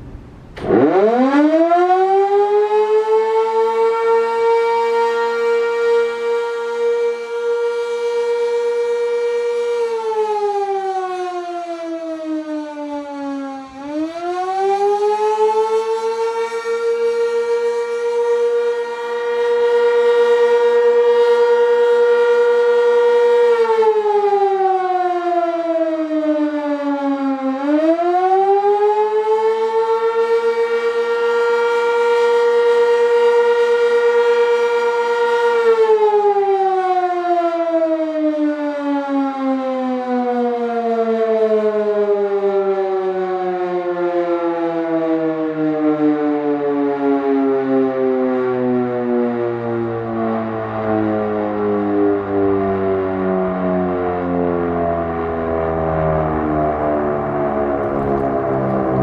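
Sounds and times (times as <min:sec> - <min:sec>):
outdoor warning siren: 0:00.0 - 0:59.0.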